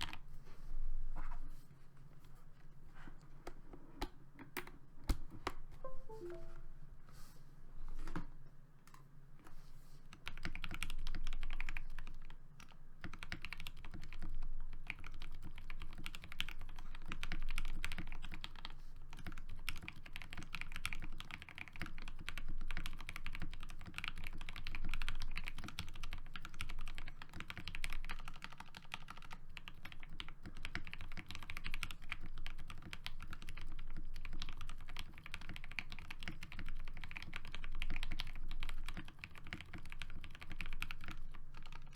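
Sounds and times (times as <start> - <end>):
mechanical keyboard typing: 10.3 - 41.9.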